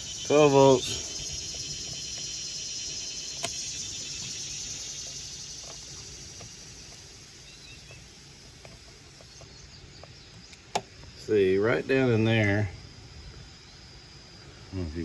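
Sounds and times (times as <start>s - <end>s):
faint ticks: 0.0s - 11.2s
crickets chirping: 0.0s - 15.0s
sharp click: 3.2s - 4.3s.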